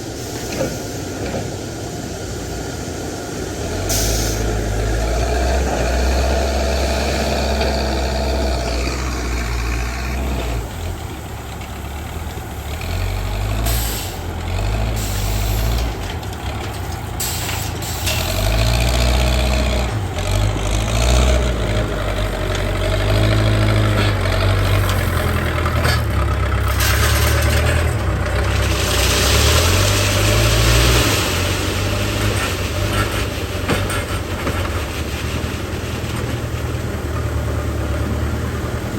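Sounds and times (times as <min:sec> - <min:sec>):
backhoe diesel engine running: 0:00.0 - 0:38.9
hydraulic hissing: 0:00.2 - 0:11.7, 0:13.5 - 0:18.7.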